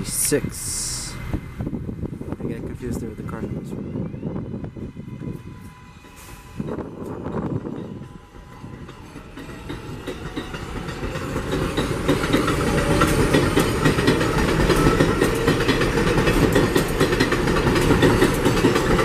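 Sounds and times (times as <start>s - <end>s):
subway train accelerating: 0.0s - 19.0s
wheels clattering over rail joints: 8.9s - 19.0s.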